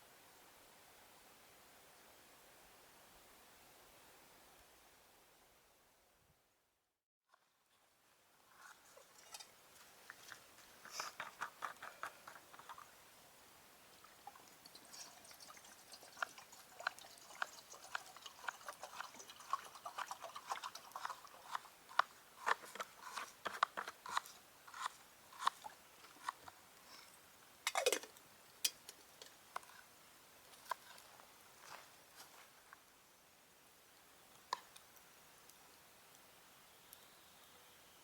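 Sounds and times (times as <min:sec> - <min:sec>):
small crunches and clicks: 0:08.6 - 0:12.9.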